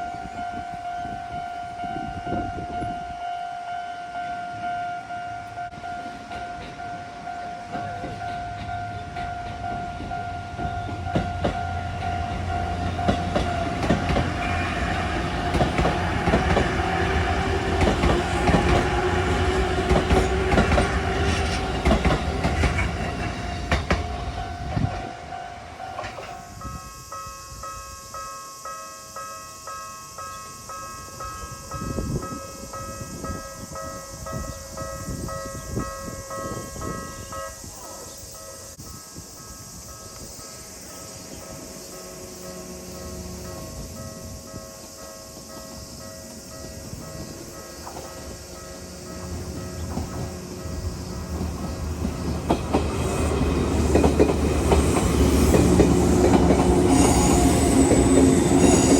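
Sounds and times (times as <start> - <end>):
train rumble: 0.0 - 28.4, 29.7 - 58.9
crossing bell ringing: 0.0 - 58.9
wheels clacking over rail joints: 5.7 - 26.6, 43.6 - 58.9.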